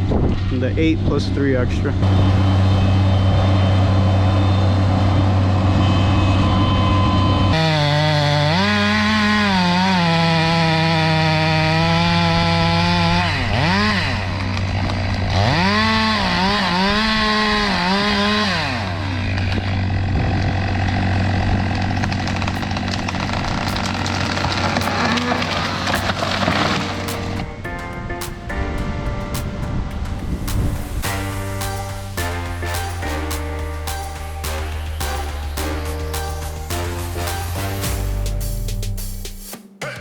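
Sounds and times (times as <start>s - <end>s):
low engine drone: 0.0s - 7.6s, 12.8s - 39.4s
chainsaw revving: 7.5s - 27.6s, 31.0s - 38.4s.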